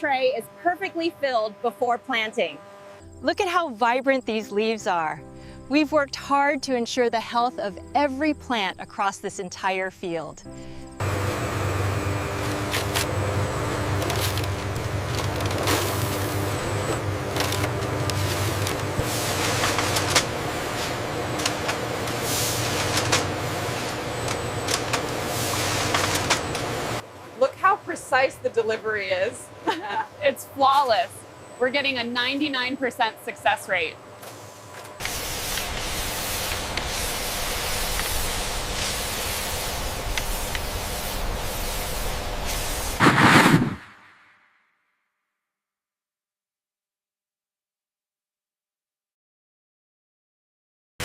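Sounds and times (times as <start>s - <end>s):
machinery humming: 10.9s - 43.0s
spray-like hissing: 34.3s - 43.8s
short hisses: 42.5s - 44.3s.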